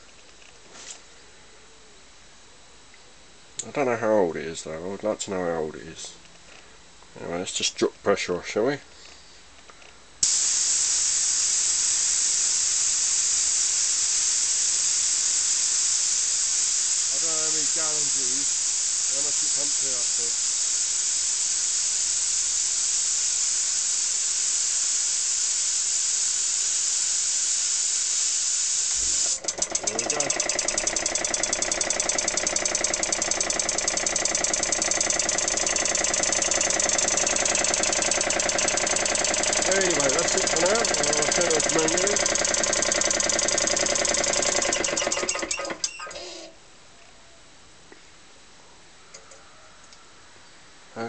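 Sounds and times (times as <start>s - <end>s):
compressed air hissing: 10.2s - 46.5s.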